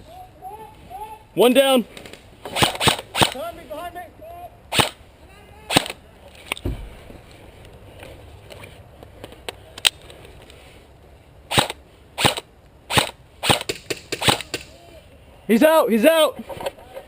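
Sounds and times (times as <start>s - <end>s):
airsoft gun shots: 2.5s - 3.4s, 4.7s - 5.0s, 11.5s - 14.7s.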